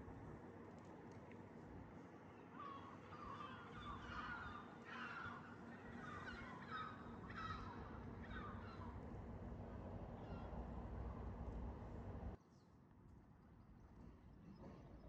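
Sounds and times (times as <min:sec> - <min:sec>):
train rumble: 0:07.0 - 0:12.4.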